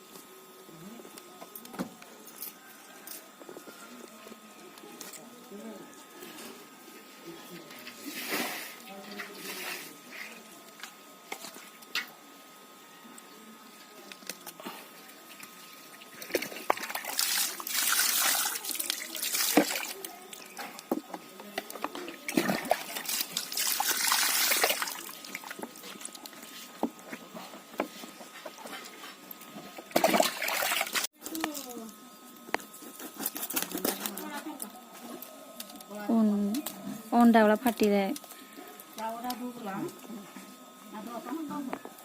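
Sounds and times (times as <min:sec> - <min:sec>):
water pouring and splashing: 0:16.0 - 0:20.0, 0:22.2 - 0:26.3, 0:29.9 - 0:31.1.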